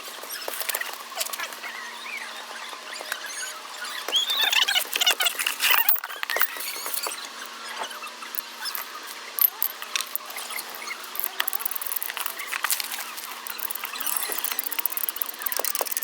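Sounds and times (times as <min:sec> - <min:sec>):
hand tools clicking and scraping metal: 0:05.0 - 0:07.6, 0:08.3 - 0:16.0.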